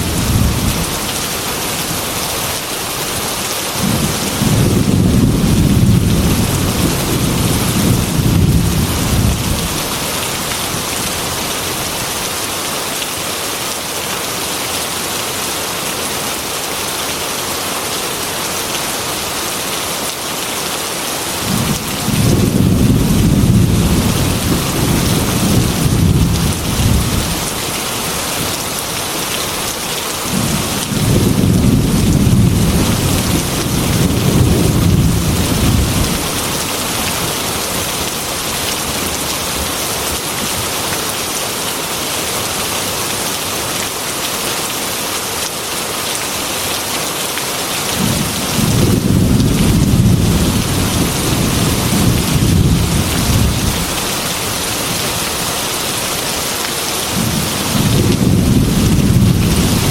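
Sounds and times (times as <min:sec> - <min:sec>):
thunder rolling: 0:03.8 - 0:09.8, 0:21.5 - 0:27.4, 0:30.3 - 0:36.3, 0:48.0 - 0:53.9, 0:57.2 - 0:59.9.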